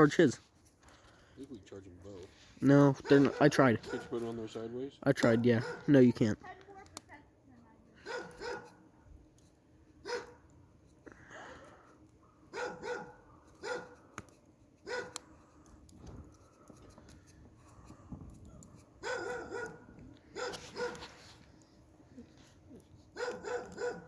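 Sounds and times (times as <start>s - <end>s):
dog barking: 3.0s - 4.2s, 5.5s - 6.0s, 8.0s - 8.8s, 10.0s - 10.4s, 12.4s - 14.0s, 14.8s - 15.2s, 19.0s - 21.1s, 23.1s - 24.0s.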